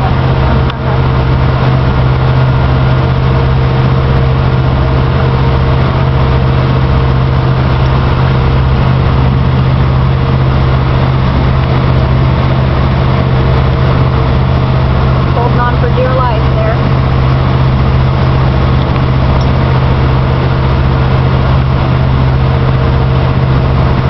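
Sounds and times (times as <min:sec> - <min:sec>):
engine running steadily: 0:00.0 - 0:24.0.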